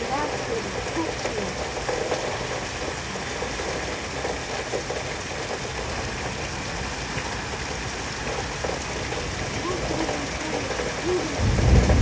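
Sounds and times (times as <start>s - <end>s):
heavy rain rushing: 0.0s - 12.0s
low rumble: 11.4s - 12.0s.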